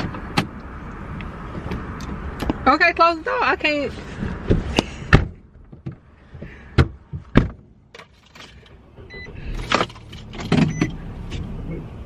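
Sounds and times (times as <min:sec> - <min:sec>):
knocks and thumps: 0:04.3 - 0:07.7
car door shutting: 0:09.0 - 0:11.5
electronic beep: 0:09.1 - 0:09.4.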